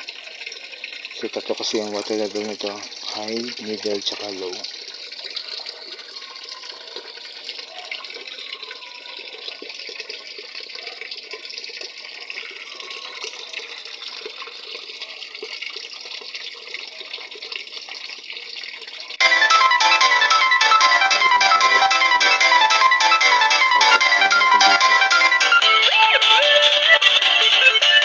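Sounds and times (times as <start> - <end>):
water pouring into washing machine: 0.0 - 19.7
music: 19.2 - 28.0.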